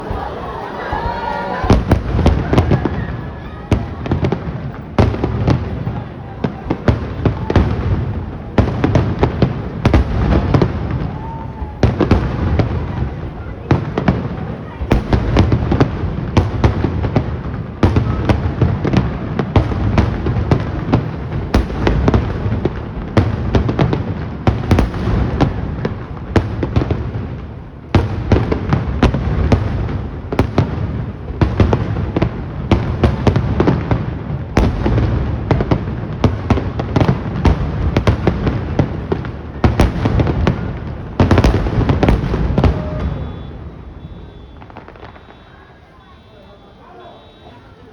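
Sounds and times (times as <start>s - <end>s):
firework shells bursting: 14.8s - 47.8s.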